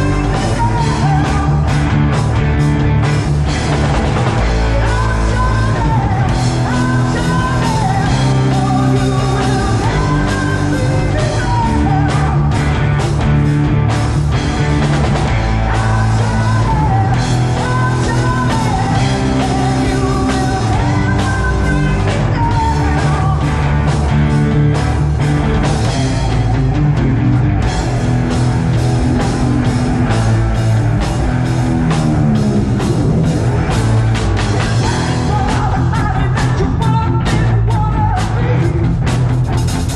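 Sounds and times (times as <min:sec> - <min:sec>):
person singing: 0:00.0 - 0:01.8, 0:04.4 - 0:12.7, 0:15.5 - 0:24.0, 0:34.3 - 0:39.2
bass guitar: 0:00.0 - 0:39.9
drums: 0:00.0 - 0:39.9
electric guitar: 0:00.0 - 0:39.9.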